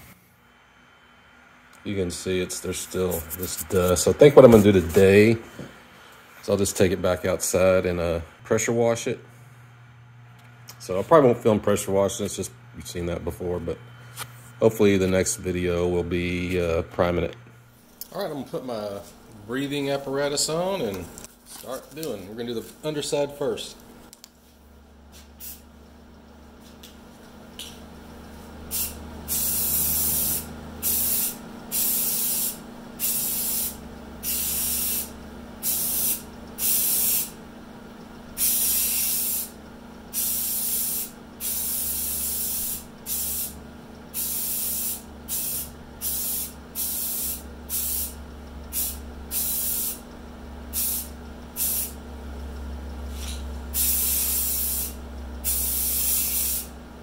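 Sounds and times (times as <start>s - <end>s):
low steady hum: 0.0s - 57.0s
spray paint hissing: 25.2s - 25.6s, 28.7s - 37.3s, 38.4s - 50.0s, 50.7s - 52.0s, 53.1s - 56.7s.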